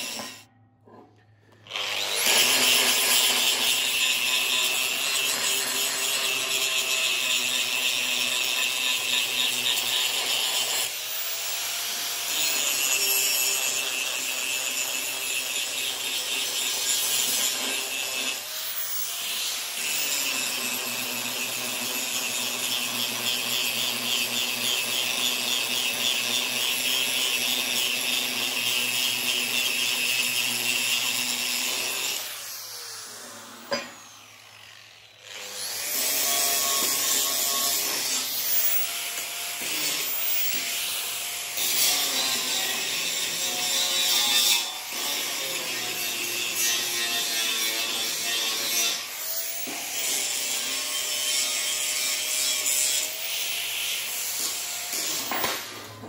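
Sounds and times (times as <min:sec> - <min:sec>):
power tool whining on steel: 0:00.0 - 0:00.5, 0:01.5 - 0:56.0.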